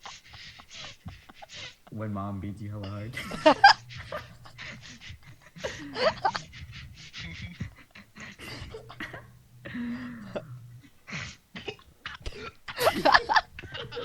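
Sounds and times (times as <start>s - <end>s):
person coughing hard: 8.4s - 10.5s, 11.1s - 13.1s.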